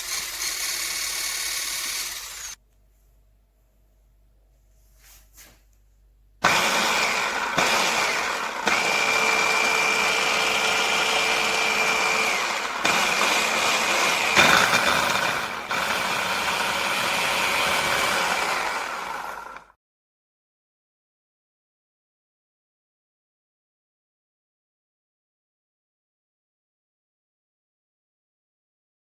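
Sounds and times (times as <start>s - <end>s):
hand blender whining: 0.0s - 2.6s, 6.4s - 19.7s.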